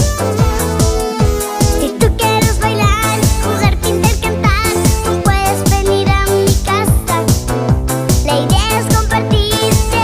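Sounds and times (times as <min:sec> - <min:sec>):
upbeat electronic music: 0:00.0 - 0:10.0.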